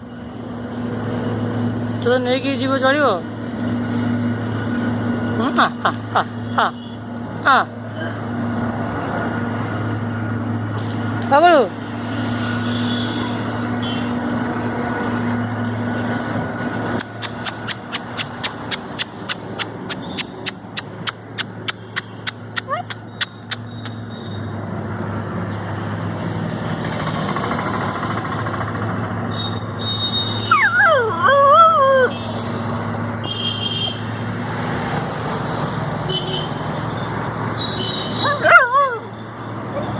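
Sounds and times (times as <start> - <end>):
vehicle engine running: 0.0 - 31.2
dog whining howl: 30.5 - 32.1.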